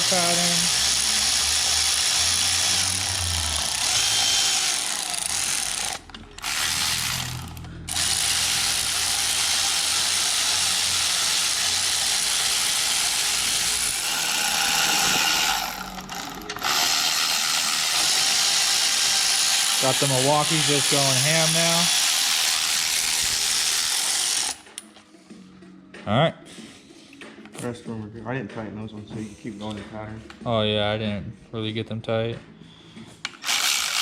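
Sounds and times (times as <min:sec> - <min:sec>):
impact wrench hammering bolts: 0:03.8 - 0:24.6.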